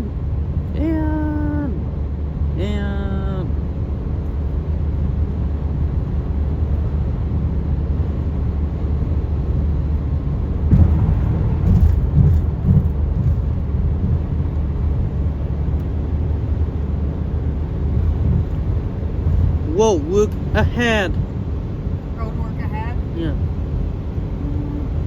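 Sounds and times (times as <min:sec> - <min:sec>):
car tyres on wet road: 0:08.0 - 0:25.0.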